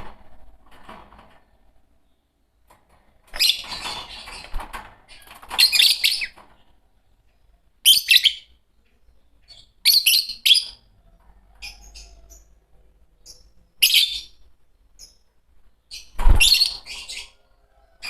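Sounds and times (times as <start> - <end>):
lovebirds shrill chirping: 5.1 - 6.4, 7.8 - 8.6, 9.5 - 10.9, 13.2 - 14.4, 15.9 - 17.4.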